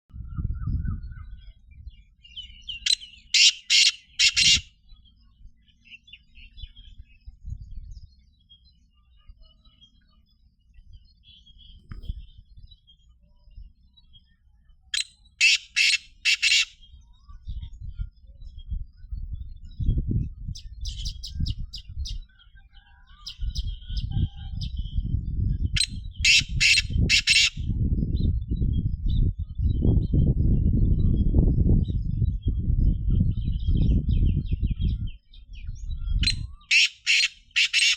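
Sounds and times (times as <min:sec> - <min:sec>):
low microphone rumble: 0:00.1 - 0:02.7, 0:06.4 - 0:08.3, 0:10.7 - 0:14.3, 0:16.8 - 0:36.7
faint small bird chirps: 0:00.2 - 0:37.9
francolin harsh grating call: 0:03.4 - 0:04.7, 0:15.4 - 0:16.8, 0:26.2 - 0:27.6, 0:36.7 - 0:37.9.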